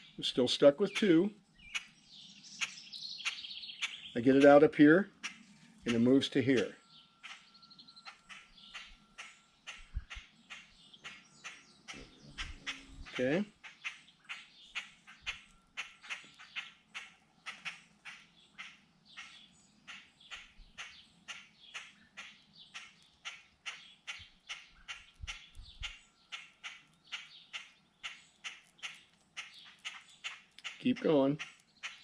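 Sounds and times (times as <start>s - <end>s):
blackbird alarm calls: 0.0s - 32.0s.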